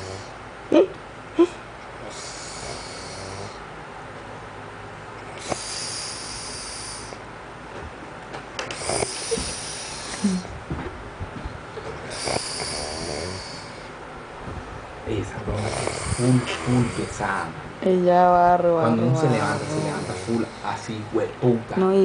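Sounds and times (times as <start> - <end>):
man snoring: 0.0 - 0.4, 2.0 - 3.6, 5.4 - 7.2, 8.8 - 10.5, 12.1 - 13.9, 15.5 - 17.5, 18.9 - 21.1.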